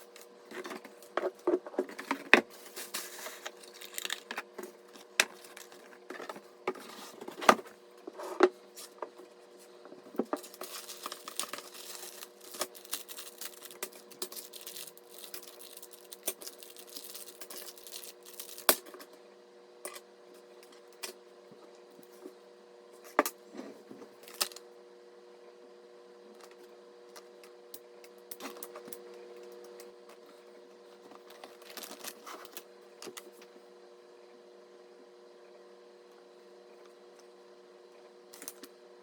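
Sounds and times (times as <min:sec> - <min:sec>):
packaging rustling: 0:00.5 - 0:07.4, 0:10.2 - 0:18.7, 0:31.2 - 0:32.6.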